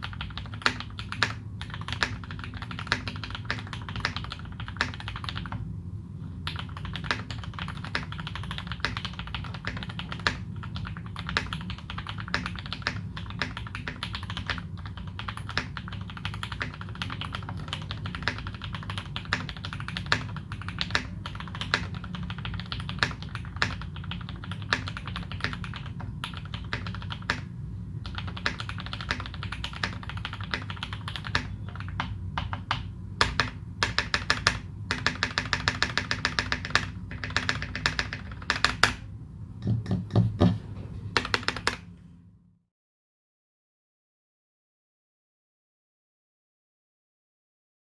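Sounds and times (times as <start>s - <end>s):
mechanical keyboard typing: 0.0s - 5.6s, 6.4s - 40.6s, 41.2s - 41.8s.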